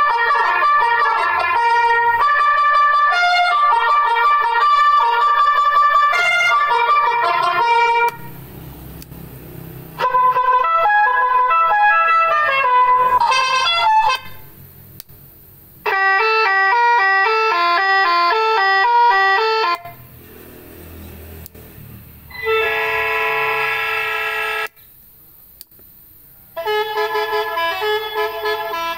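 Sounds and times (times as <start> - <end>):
electronic horn playing a tune: 0.0 - 8.4, 10.0 - 14.5, 15.8 - 20.1, 22.3 - 24.8, 26.6 - 28.9.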